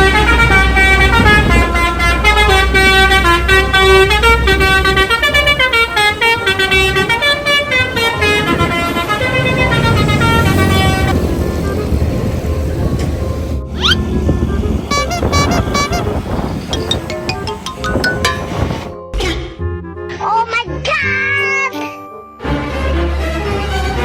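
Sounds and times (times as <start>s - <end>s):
musical air horns playing melody: 0.0s - 11.1s, 14.0s - 18.9s
bus engine rumble: 0.0s - 17.7s.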